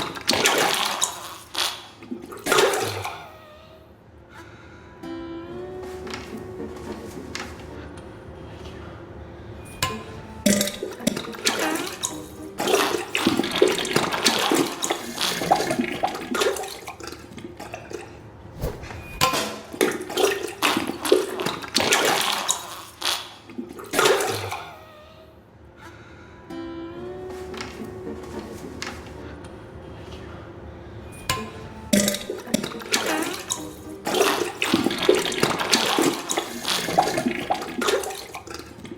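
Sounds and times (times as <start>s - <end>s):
watery spurts into toilet bowl: 0.0s - 3.2s, 10.6s - 18.1s, 19.2s - 24.6s, 32.0s - 38.9s.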